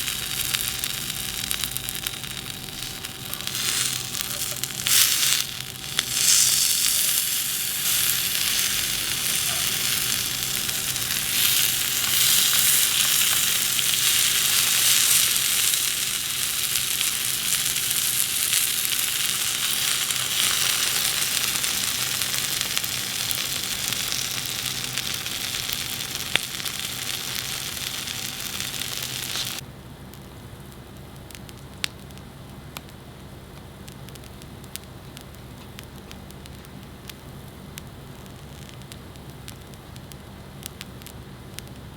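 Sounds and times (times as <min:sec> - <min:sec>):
food sizzling as it fries: 0:00.0 - 0:29.6.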